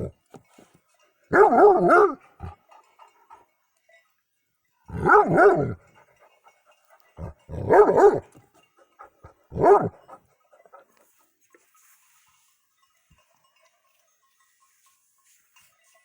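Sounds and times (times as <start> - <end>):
dog barking: 1.3 - 2.6, 4.9 - 5.8, 7.2 - 8.4, 9.2 - 10.2.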